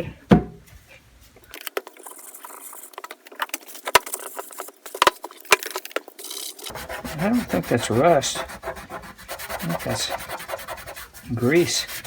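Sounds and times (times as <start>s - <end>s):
rag rubbing over metal: 6.2s - 12.0s.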